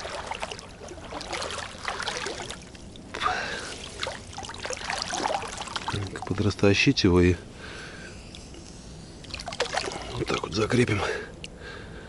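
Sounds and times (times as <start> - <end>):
water splashing and trickling: 0.0 - 7.2, 8.2 - 11.5.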